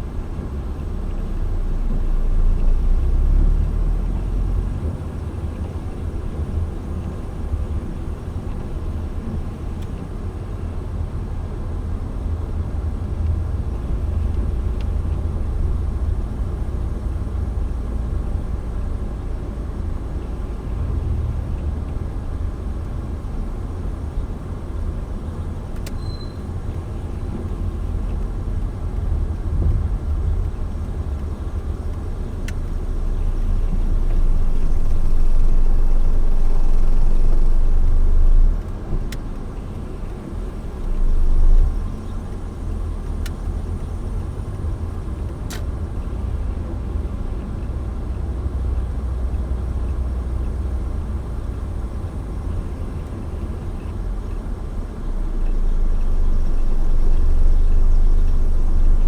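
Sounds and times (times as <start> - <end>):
car road noise rumble: 0.0 - 59.0
faint ticks: 25.8 - 46.2.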